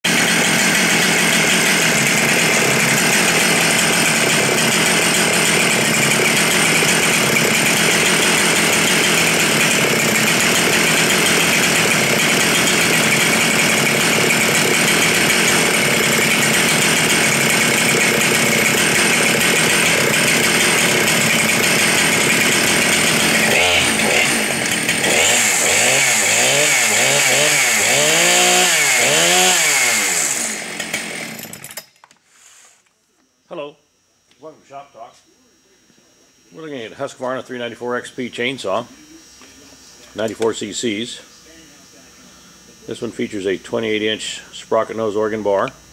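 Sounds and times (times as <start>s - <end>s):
chainsaw revving: 0.0s - 31.8s.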